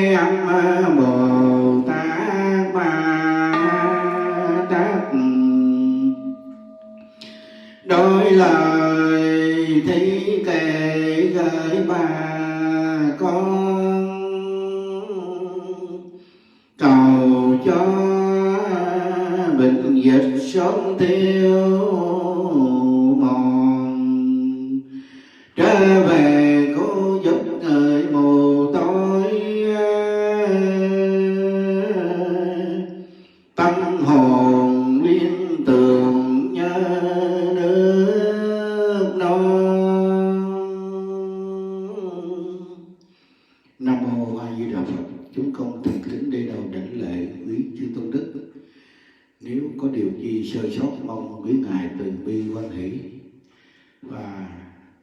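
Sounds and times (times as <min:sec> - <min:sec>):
melodic chanting: 0:00.0 - 0:12.5.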